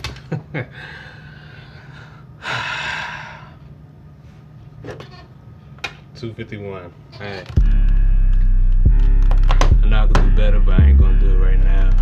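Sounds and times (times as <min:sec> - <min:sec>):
person breathing out hard: 0:00.7 - 0:03.7.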